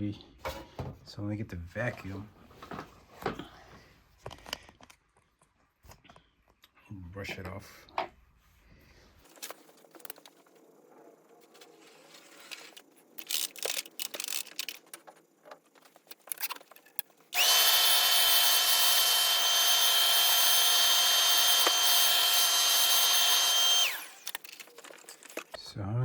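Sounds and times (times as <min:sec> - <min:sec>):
light clicks and handling: 0:11.5 - 0:17.2
small vacuum cleaner running: 0:17.3 - 0:24.5.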